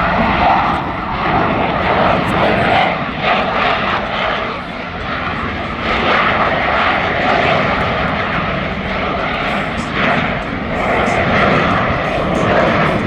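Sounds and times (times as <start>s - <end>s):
jet engines roaring: 0.0s - 13.0s.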